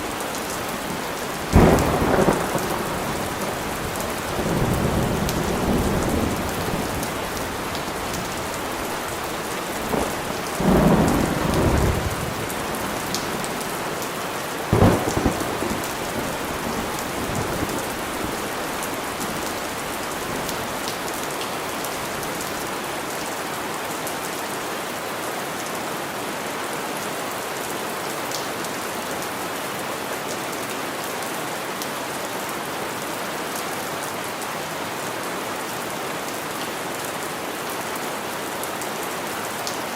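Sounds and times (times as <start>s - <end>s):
steady rain: 0.0s - 39.9s
thunder rumbling: 1.4s - 13.8s, 14.7s - 21.0s
sharp thunderclap: 1.5s - 7.0s, 14.7s - 17.9s.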